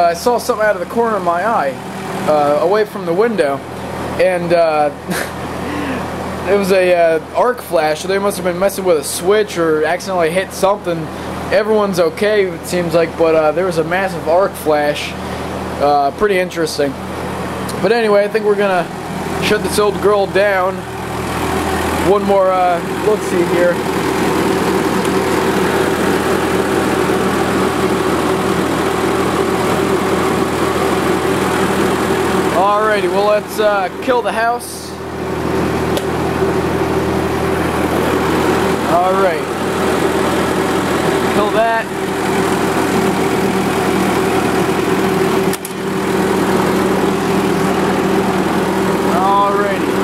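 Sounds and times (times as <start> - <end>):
generator engine running: 0.0 - 50.0
sharp click: 45.5 - 45.8.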